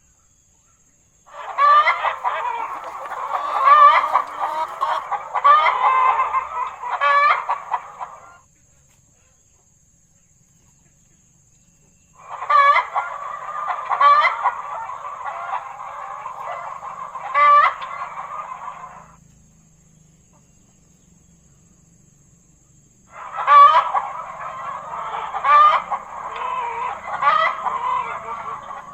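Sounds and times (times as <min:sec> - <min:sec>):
chickens clucking: 0:00.8 - 0:09.7, 0:10.6 - 0:21.1, 0:22.5 - 0:28.9.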